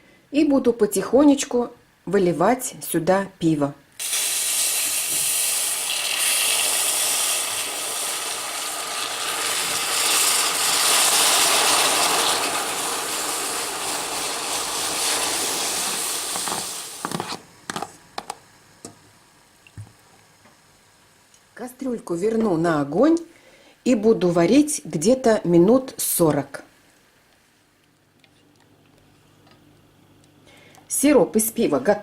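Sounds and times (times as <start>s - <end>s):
liquid hissing on hot sugar: 4.0s - 17.4s.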